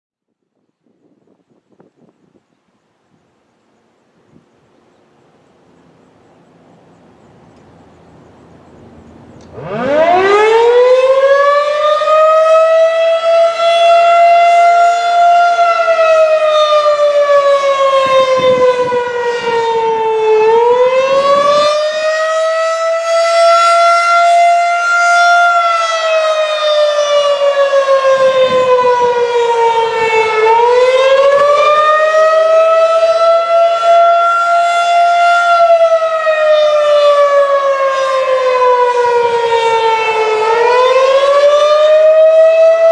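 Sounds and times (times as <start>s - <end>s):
electromechanical siren wailing: 9.4s - 42.9s.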